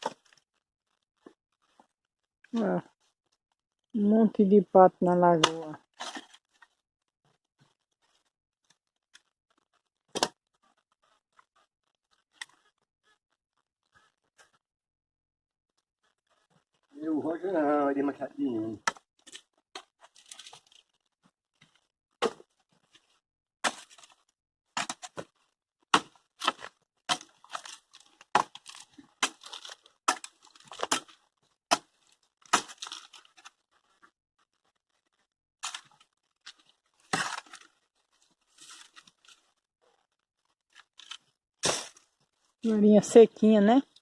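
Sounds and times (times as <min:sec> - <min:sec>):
wood cracking and splintering: 0:00.0 - 0:01.9, 0:05.4 - 0:14.1, 0:18.8 - 0:42.7
hatchet chopping dry wood: 0:10.1 - 0:10.4, 0:22.2 - 0:22.5, 0:24.8 - 0:25.3, 0:25.9 - 0:31.1, 0:31.7 - 0:33.0.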